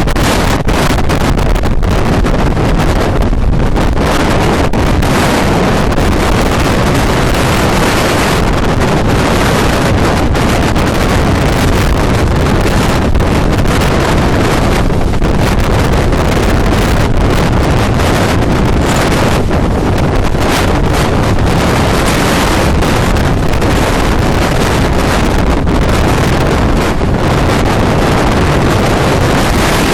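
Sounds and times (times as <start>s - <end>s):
strong wind on microphone: 0.0s - 29.9s.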